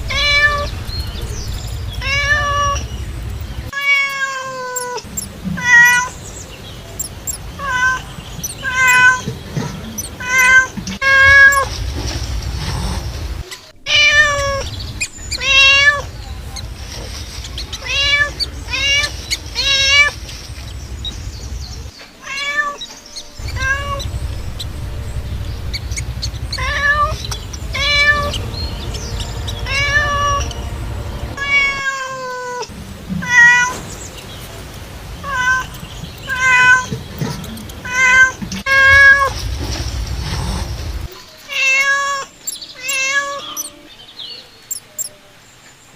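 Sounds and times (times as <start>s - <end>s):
cat meowing: 0.0s - 1.3s, 1.9s - 2.9s, 3.7s - 6.2s, 7.6s - 11.7s, 13.8s - 16.4s, 17.0s - 20.3s, 22.2s - 30.6s, 31.3s - 33.8s, 35.2s - 39.4s, 41.5s - 43.7s
steady low rumble: 0.0s - 3.8s, 10.8s - 21.9s, 23.2s - 31.9s, 32.7s - 41.2s.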